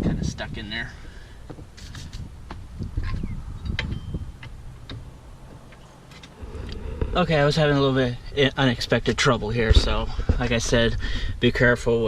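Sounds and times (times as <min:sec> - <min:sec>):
low rumble: 0:02.2 - 0:05.7, 0:06.3 - 0:12.0
metal knocks and clanks: 0:09.0 - 0:10.9.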